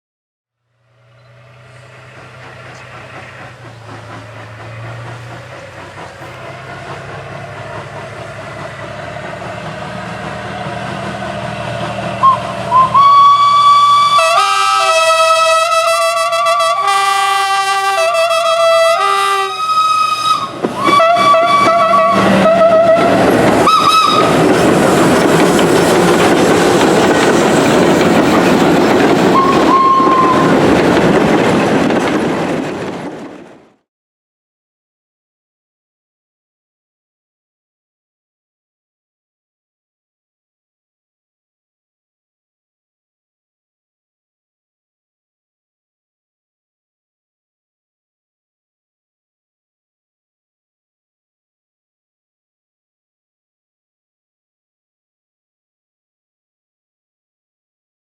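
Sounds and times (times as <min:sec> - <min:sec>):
train rolling: 0:00.8 - 0:33.9
wheels clattering on rail: 0:01.0 - 0:13.4, 0:18.0 - 0:33.8
train whistle blasts: 0:12.2 - 0:24.4, 0:29.3 - 0:30.5.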